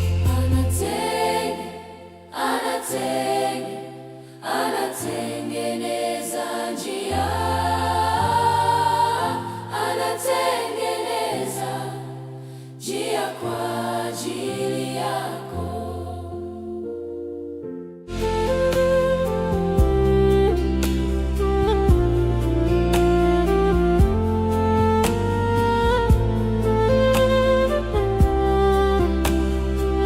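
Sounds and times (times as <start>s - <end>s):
choir singing gospel: 0.0s - 17.1s, 18.1s - 30.0s
steady bass line: 18.1s - 30.0s.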